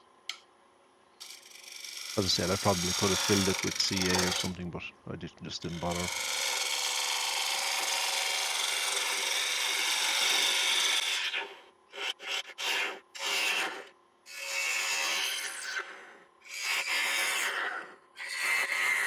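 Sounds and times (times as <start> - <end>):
lathe gouge cutting wood: 1.2 - 4.6, 5.6 - 11.5.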